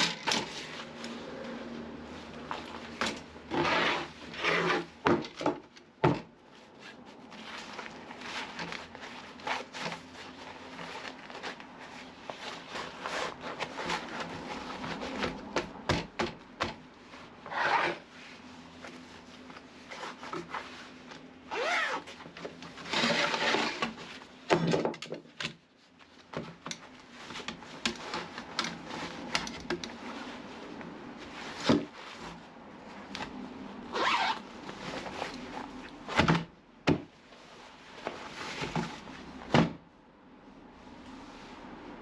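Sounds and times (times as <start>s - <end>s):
rasping scrapes and rustles: 0.0s - 5.2s, 6.6s - 15.6s, 17.2s - 24.3s.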